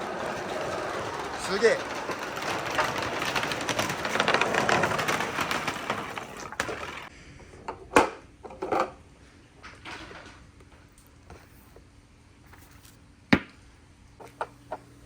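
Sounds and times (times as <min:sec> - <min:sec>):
marbles rattling on wooden track: 0:00.0 - 0:07.1.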